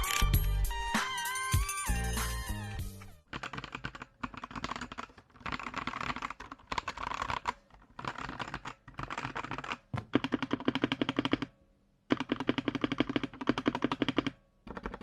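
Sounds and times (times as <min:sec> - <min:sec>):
typing on a computer keyboard: 0:03.3 - 0:15.0.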